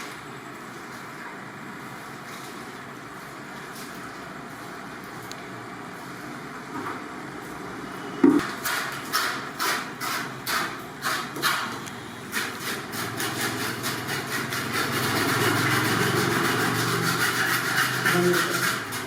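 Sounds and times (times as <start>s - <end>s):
steady rasping with low hum: 8.2s - 19.0s.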